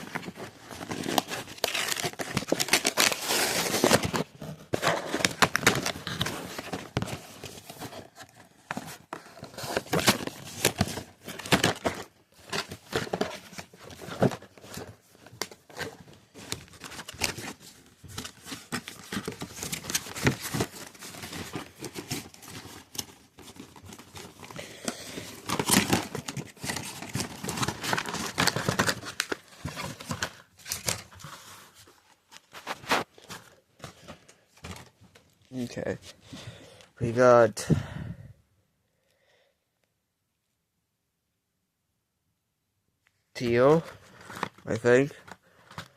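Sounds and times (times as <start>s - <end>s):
plastic wrap crinkling and tearing: 0.0s - 33.3s
cardboard clicks and rustles: 0.0s - 35.9s.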